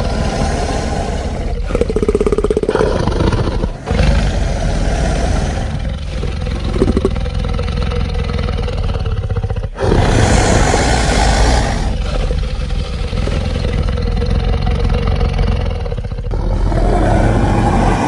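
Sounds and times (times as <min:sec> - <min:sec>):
harsh pulsing creature growl: 0:00.0 - 0:18.0.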